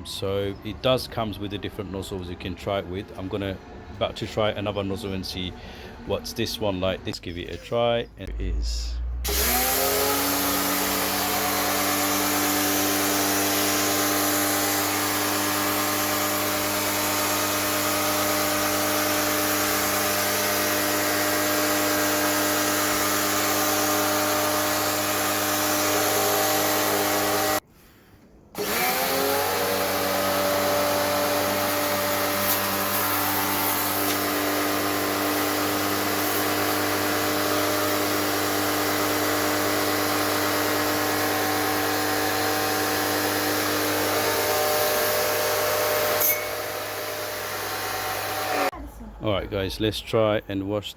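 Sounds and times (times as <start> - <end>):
pressure washer motor whine: 9.2 - 27.6, 28.6 - 48.7.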